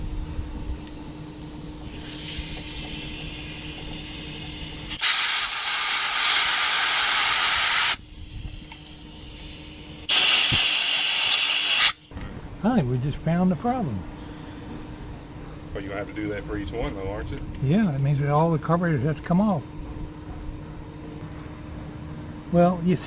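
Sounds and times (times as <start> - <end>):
aerosol spray hissing: 1.9 - 12.0
loud aerosol spray: 1.9 - 12.1.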